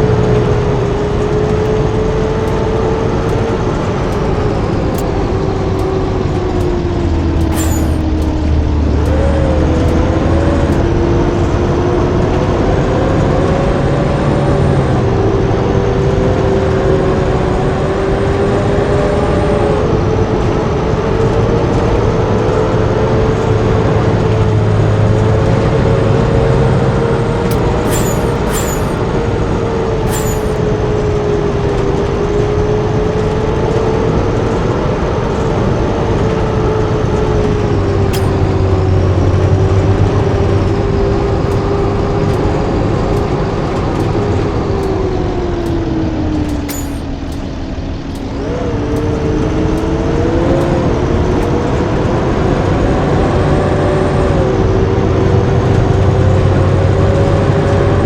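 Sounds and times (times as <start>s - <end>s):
bus engine running: 0.0s - 58.0s
sharp clicks: 3.2s - 10.9s, 27.5s - 29.0s, 30.1s - 30.6s, 38.1s - 38.8s, 41.4s - 50.0s.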